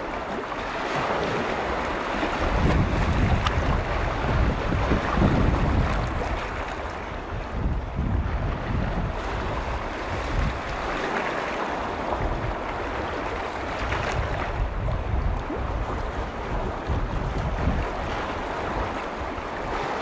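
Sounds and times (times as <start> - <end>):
waves washing: 0.0 - 20.0
wind buffeting microphone: 0.0 - 20.0.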